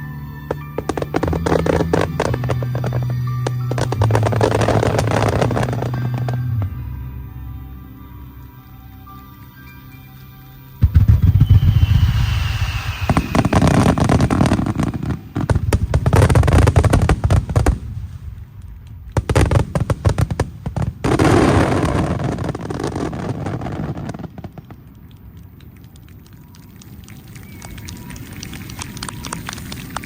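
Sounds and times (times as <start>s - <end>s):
fireworks booming and crackling: 0.4s - 6.8s, 10.8s - 25.0s.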